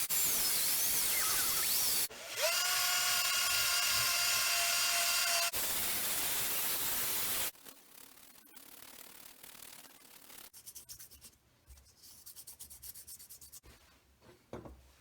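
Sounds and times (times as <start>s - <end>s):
power tool whine: 0.1s - 7.5s.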